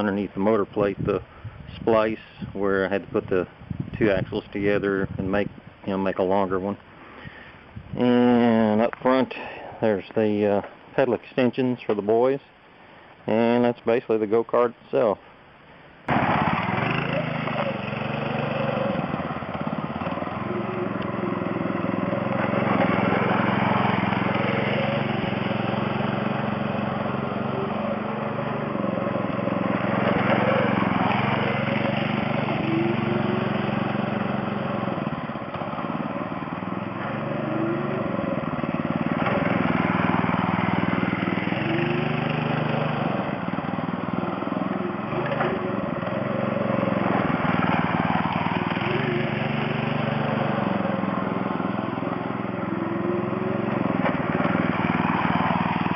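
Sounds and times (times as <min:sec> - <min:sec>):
go-kart engine running: 0:16.1 - 0:55.9.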